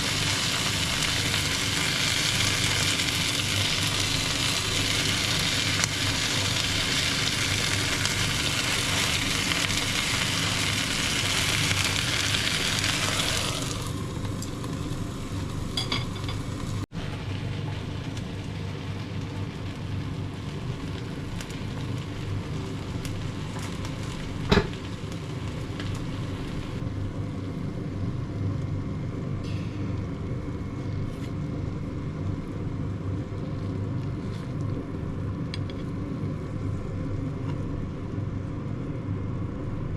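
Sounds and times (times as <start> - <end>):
food sizzling on grill: 0.0 - 26.8
steady low hum: 0.0 - 39.9.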